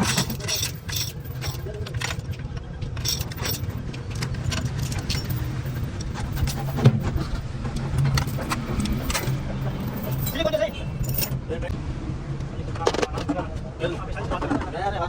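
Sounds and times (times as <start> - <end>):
metal tools clinking and tapping: 0.0 - 11.4
low mechanical hum: 0.0 - 15.0.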